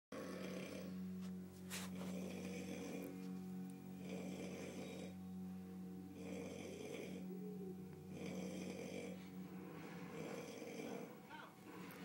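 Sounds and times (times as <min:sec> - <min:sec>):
man snoring heavily: 0:00.1 - 0:01.1, 0:01.9 - 0:03.2, 0:03.9 - 0:05.2, 0:06.0 - 0:07.4, 0:08.1 - 0:11.2.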